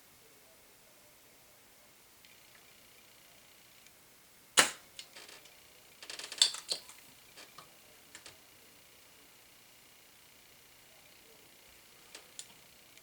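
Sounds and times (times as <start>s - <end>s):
solder sucker snapping: 4.6s - 4.8s
clicks and rattles of handling: 5.0s - 8.4s.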